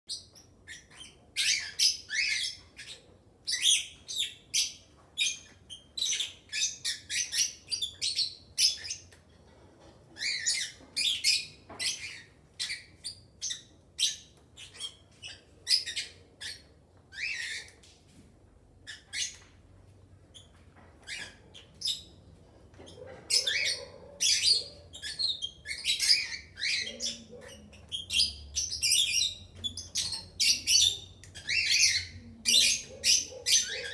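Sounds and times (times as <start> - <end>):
parrots squawking and chirping: 0.1 - 17.8, 18.8 - 19.6, 20.3 - 33.9.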